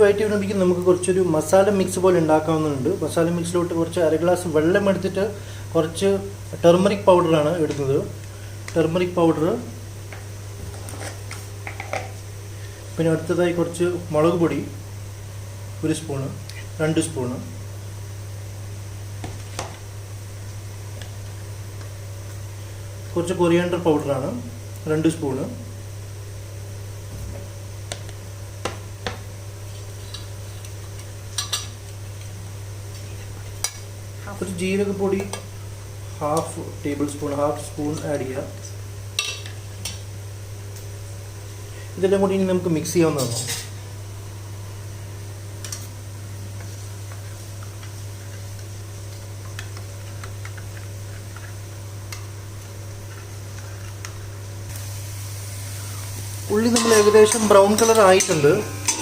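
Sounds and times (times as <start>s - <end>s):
steady low hum: 0.0s - 59.0s
onions frying in oil: 45.6s - 59.0s.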